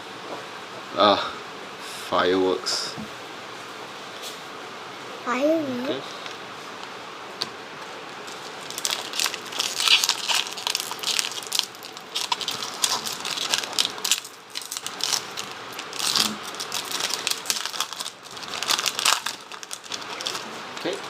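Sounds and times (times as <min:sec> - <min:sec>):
wrapper being torn and crinkled: 0:08.2 - 0:21.0.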